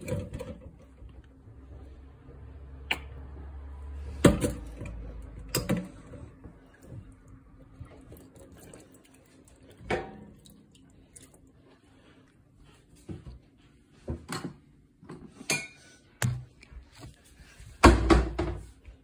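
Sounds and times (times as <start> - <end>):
objects knocking and clattering: 0.0 - 1.1, 4.1 - 6.5.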